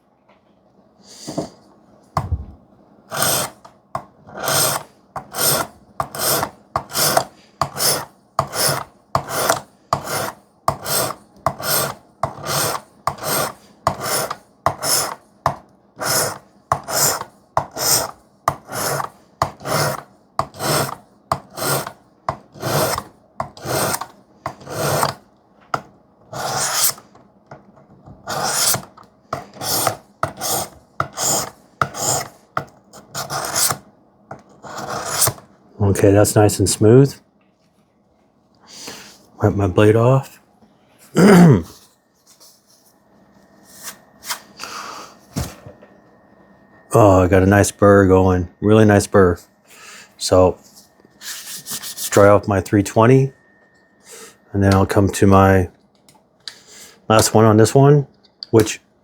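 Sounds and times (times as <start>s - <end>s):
knife rasping on sharpening stone: 3.1s - 3.6s, 4.4s - 15.2s, 16.0s - 22.0s, 22.6s - 25.2s, 26.4s - 27.0s, 28.3s - 28.9s, 29.6s - 32.3s, 33.1s - 33.8s, 34.6s - 35.4s.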